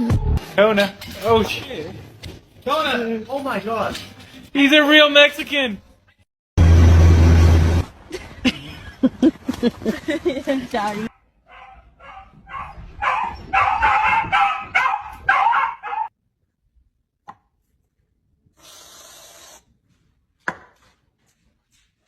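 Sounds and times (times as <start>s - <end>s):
dog barking: 11.1s - 16.1s.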